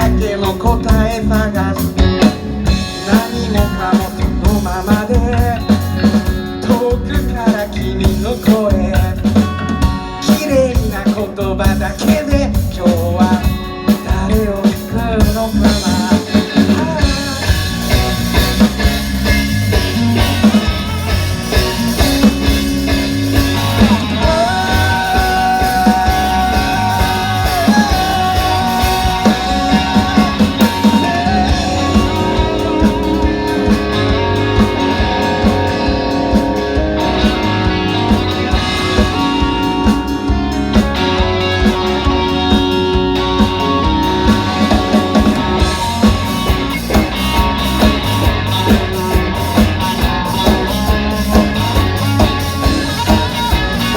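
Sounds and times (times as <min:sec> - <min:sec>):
rock band music: 0:00.0 - 0:53.9
long held melody line: 0:15.7 - 0:53.9.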